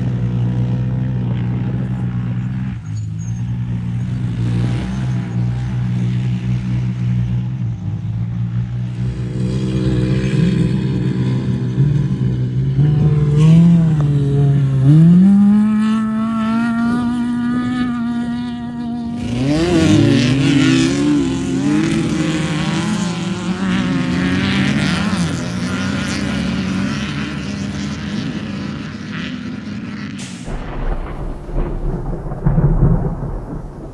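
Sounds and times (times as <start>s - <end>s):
race vehicle engine accelerating: 0.0s - 33.9s
rough rush of noise: 30.2s - 33.9s.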